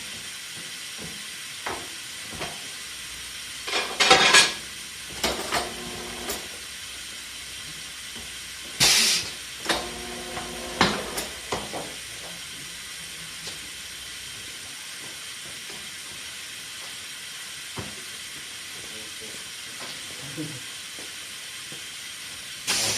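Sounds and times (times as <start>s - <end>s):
machine hum: 5.5s - 6.6s, 9.6s - 11.6s
compressed air hissing: 8.7s - 12.1s, 22.6s - 22.9s.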